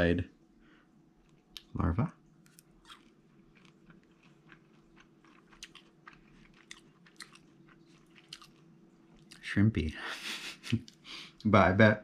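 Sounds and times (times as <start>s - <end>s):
chewing crunches: 2.5s - 9.5s.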